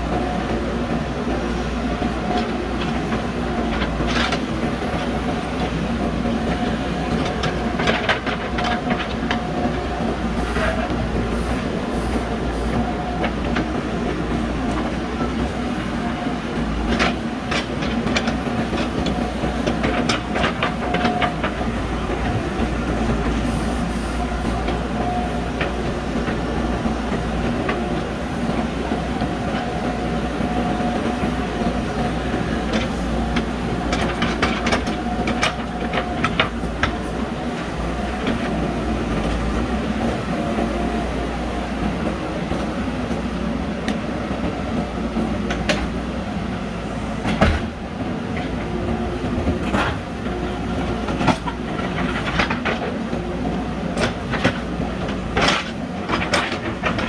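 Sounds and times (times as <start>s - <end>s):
metal clanks and knocks: 54.0s - 57.0s.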